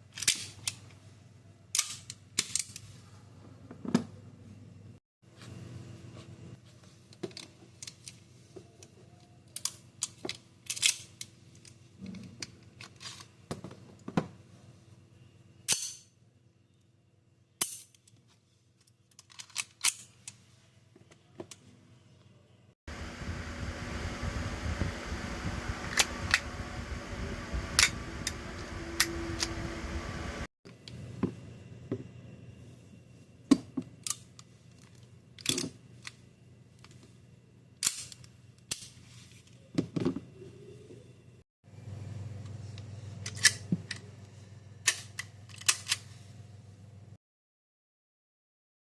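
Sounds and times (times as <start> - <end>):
airsoft gun shots: 25.9 - 26.6, 27.7 - 29.7.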